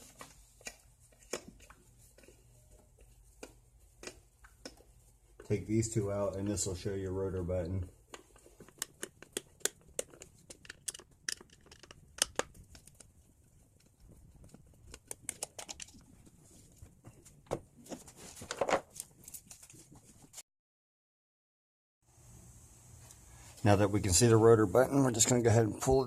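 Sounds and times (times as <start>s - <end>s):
handling of parts: 8.0s - 20.4s.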